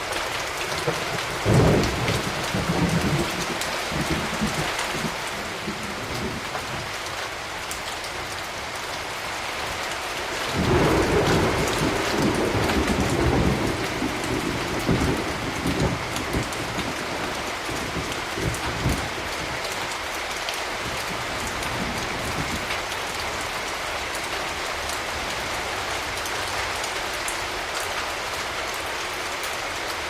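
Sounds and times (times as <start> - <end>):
thunder rumbling: 0.0 - 7.0, 10.5 - 19.6
steady rain falling: 0.0 - 30.0.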